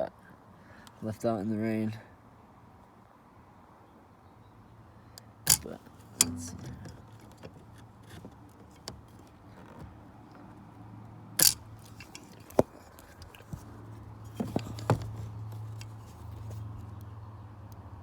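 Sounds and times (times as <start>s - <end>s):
sharp plastic clicks: 5.2s - 9.5s, 11.4s - 13.7s
low steady hum: 5.5s - 9.4s
tool scraping plastic clip: 5.5s - 9.9s, 11.4s - 16.6s.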